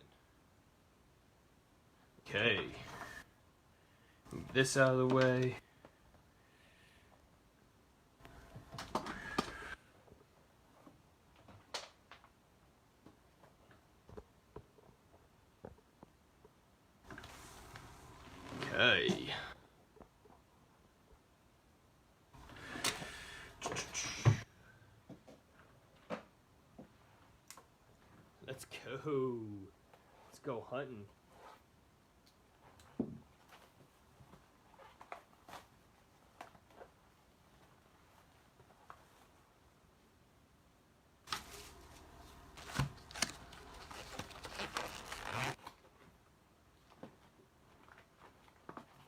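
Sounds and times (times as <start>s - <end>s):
packaging being torn open: 42.4s - 45.6s.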